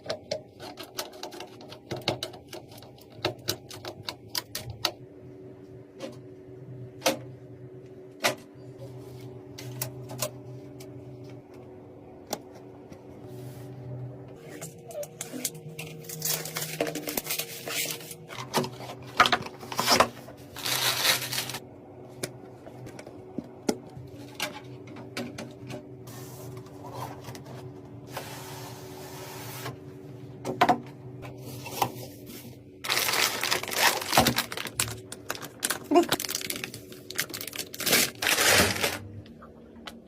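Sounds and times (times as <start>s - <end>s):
packaging rustling: 15.1s - 21.6s, 32.8s - 39.0s.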